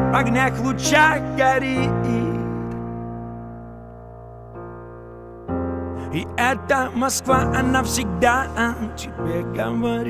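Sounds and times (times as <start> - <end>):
person singing pop song: 0.0 - 3.0, 6.0 - 10.0
held keyboard chord: 0.0 - 10.0.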